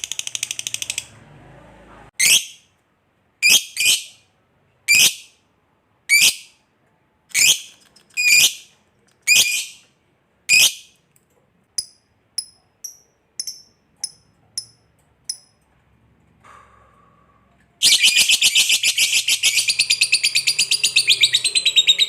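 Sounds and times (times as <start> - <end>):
lovebird chirps: 7.4 - 8.7, 9.3 - 9.8, 11.8 - 15.5, 17.8 - 22.0.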